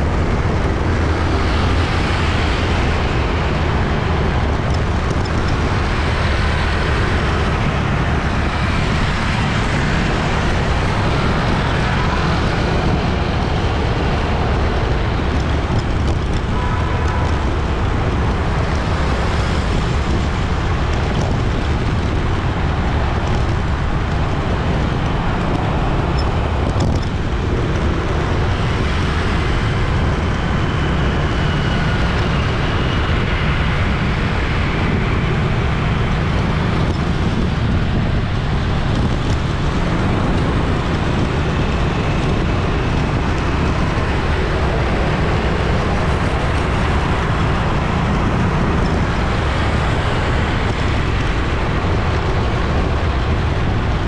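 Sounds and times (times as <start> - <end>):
dense traffic rumble: 0.0 - 54.0.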